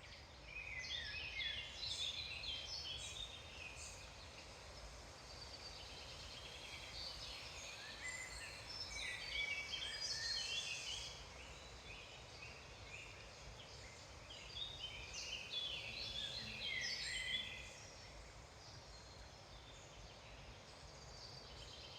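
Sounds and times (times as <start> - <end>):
songbirds singing: 0.0 - 21.9.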